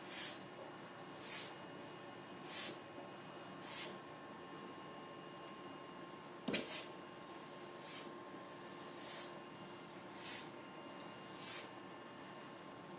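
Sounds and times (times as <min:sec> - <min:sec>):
short hissing sound effects: 0:00.0 - 0:00.4, 0:01.2 - 0:01.6, 0:02.5 - 0:02.8, 0:03.6 - 0:04.0, 0:06.6 - 0:07.0, 0:07.8 - 0:08.1, 0:08.9 - 0:09.4, 0:10.2 - 0:10.6, 0:11.4 - 0:11.8.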